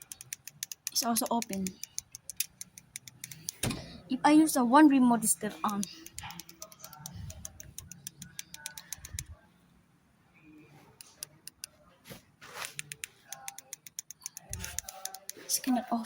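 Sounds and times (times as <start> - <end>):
remote control buttons clicking: 0.0 - 3.9, 5.2 - 9.4, 10.9 - 11.8, 12.6 - 15.8.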